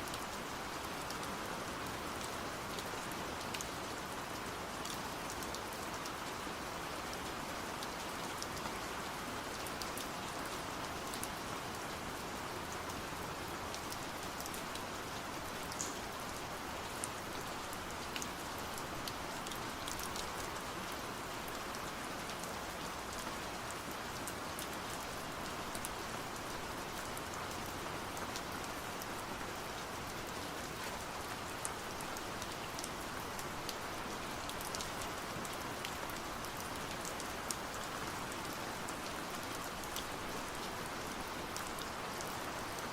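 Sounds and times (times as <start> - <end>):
steady rain falling: 0.0 - 42.9.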